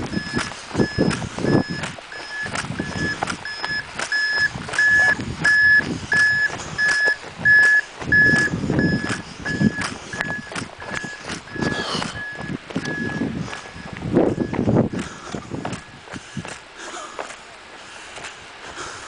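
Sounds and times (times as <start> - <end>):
low crunching and thumps: 0.0 - 18.9
electronic warning beeper: 0.1 - 14.7.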